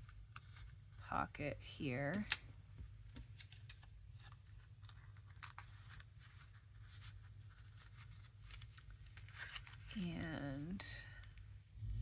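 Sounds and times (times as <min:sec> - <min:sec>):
paper cards rustling: 0:03.1 - 0:11.4.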